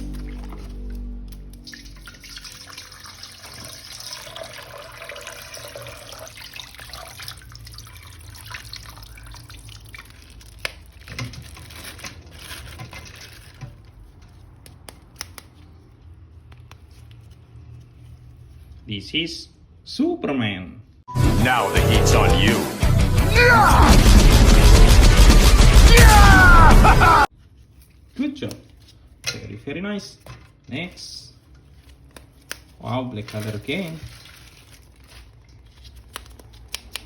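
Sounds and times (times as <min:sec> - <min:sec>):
water running and splashing: 0:01.6 - 0:11.1, 0:33.3 - 0:35.4.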